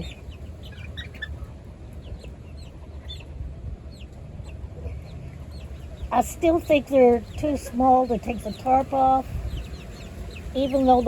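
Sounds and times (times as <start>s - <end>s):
chicks peeping: 0.0s - 11.0s
wind on microphone: 3.2s - 11.0s.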